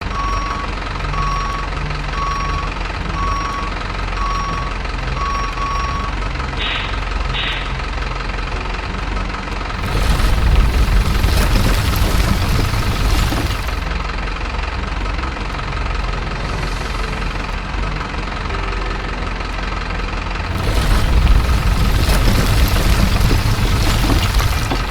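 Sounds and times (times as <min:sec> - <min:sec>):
reversing beeps: 0:00.0 - 0:07.7
diesel engine rumble: 0:00.0 - 0:24.9
rushing noise: 0:09.8 - 0:14.0, 0:16.0 - 0:19.2, 0:20.4 - 0:24.9.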